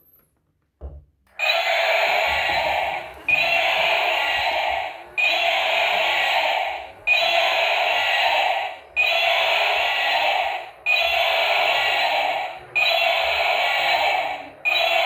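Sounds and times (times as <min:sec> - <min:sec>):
toy electronic hissing burst: 0:01.4 - 0:15.0.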